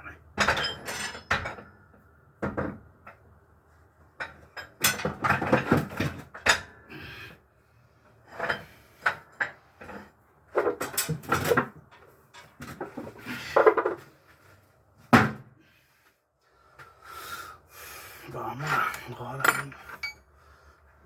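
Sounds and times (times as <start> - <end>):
metal parts clinking and knocking: 0.4 - 1.7, 18.8 - 20.3.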